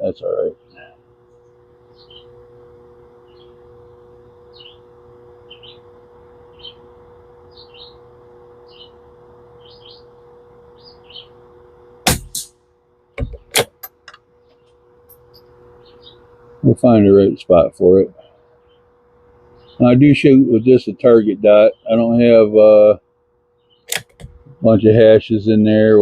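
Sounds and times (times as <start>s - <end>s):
faint steady hum: 0.0s - 26.0s
rifle shot: 12.0s - 12.6s
sharp crack: 12.0s - 12.7s
quick sharp clicks: 23.9s - 24.4s.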